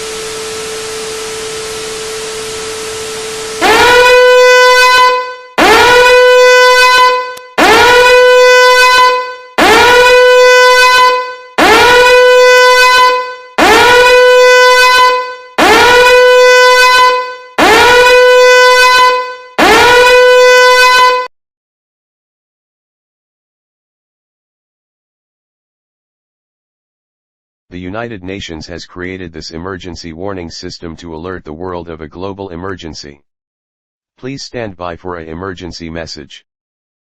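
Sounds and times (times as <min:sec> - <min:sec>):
electronic alert horn blasts: 0:00.0 - 0:21.3.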